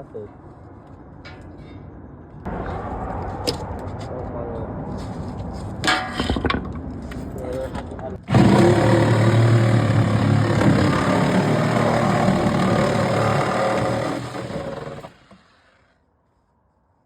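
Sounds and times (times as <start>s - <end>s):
power tool cutting sheet metal: 8.2s - 15.7s.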